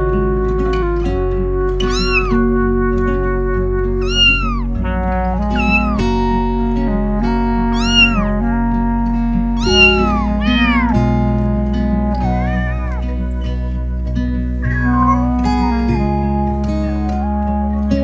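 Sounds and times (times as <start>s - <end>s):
background music: 0.5s - 18.0s
cat meowing: 1.8s - 2.4s, 4.0s - 4.8s, 5.4s - 6.2s, 7.7s - 8.4s, 9.6s - 11.2s, 12.2s - 13.1s.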